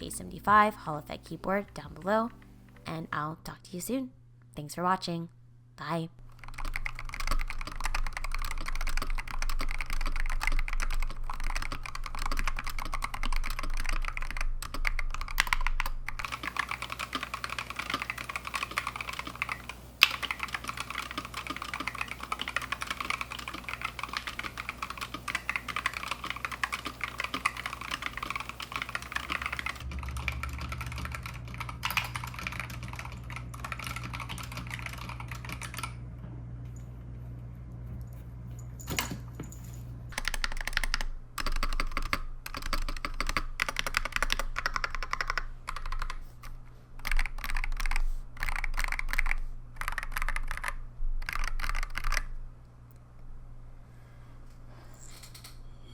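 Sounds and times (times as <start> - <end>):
fast keyboard typing clacks: 6.3 - 36.0, 40.2 - 46.3, 47.0 - 52.3.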